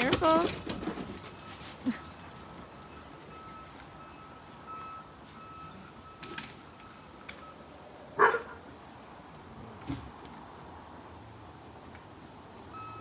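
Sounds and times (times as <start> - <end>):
dog barking: 8.2 - 8.6.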